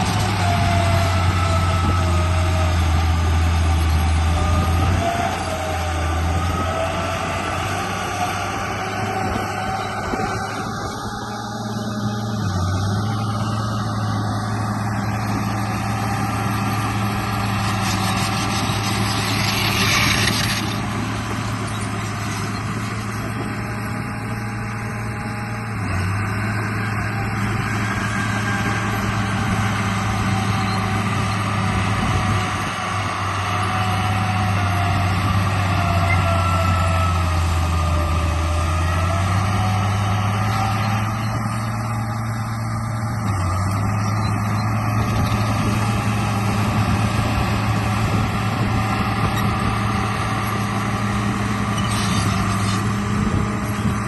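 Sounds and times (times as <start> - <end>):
remote-control bulldozer running: 0.0 - 54.0.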